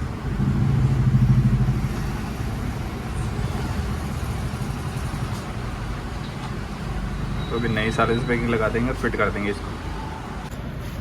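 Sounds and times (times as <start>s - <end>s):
vehicle engine throbbing: 0.0s - 5.9s.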